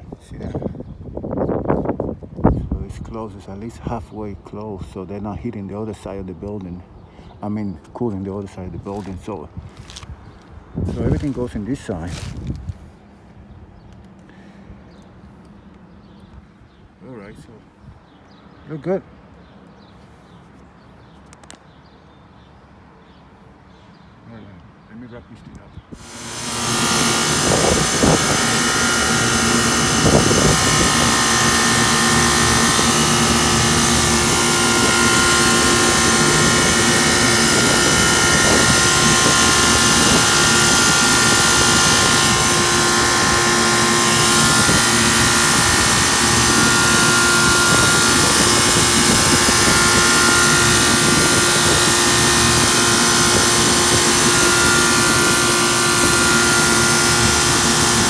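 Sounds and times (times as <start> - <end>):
air conditioning unit drone: 26.0 - 58.0.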